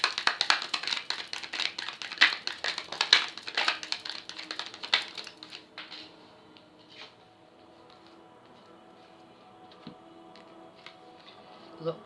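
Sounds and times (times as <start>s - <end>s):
cards being shuffled: 0.0s - 5.6s.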